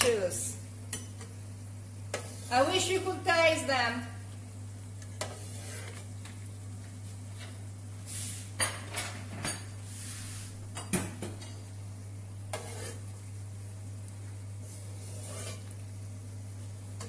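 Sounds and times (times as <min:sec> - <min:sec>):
steady low hum: 0:00.0 - 0:17.0
metal utensil scraping a pan: 0:05.2 - 0:06.0, 0:12.5 - 0:13.1, 0:15.0 - 0:15.8.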